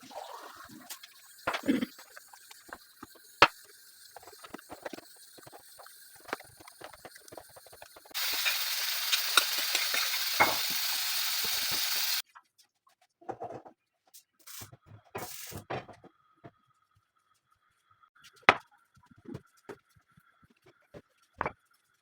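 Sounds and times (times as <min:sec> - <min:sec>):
food sizzling in hot oil: 0:00.0 - 0:12.2
kitchen utensils clicking and knocking: 0:00.9 - 0:12.2.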